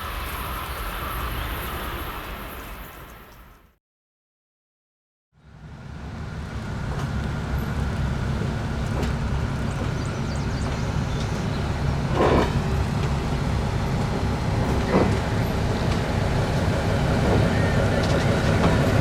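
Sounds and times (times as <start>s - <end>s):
low vehicle rumble: 5.4s - 19.0s.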